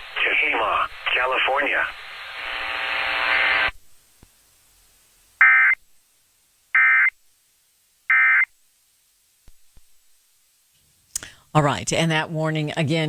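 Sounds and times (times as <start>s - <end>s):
radio hiss: 0.0s - 5.8s.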